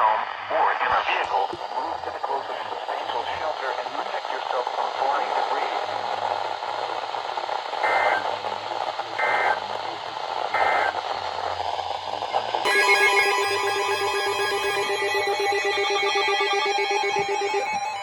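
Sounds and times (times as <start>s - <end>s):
radio static: 0.2s - 6.2s, 7.7s - 11.1s, 13.1s - 18.0s
two-tone data bursts: 10.6s - 11.0s, 12.7s - 18.0s
music-like tones: 12.6s - 18.0s.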